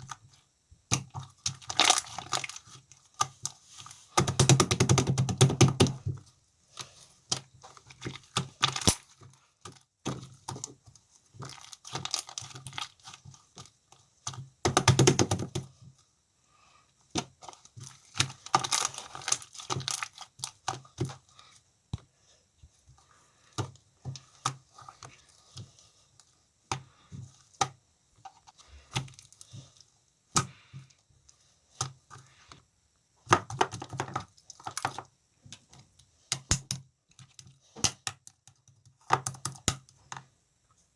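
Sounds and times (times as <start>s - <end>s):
slime squishing: 5.2s - 15.6s, 17.1s - 21.6s.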